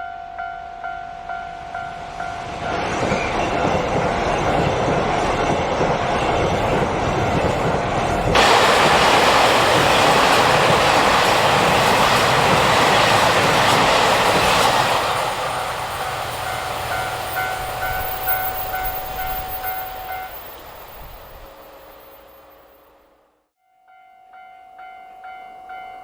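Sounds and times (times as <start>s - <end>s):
crossing warning bell ringing: 0.0s - 3.0s, 8.4s - 22.6s, 23.6s - 26.0s
train rolling past: 0.0s - 23.4s.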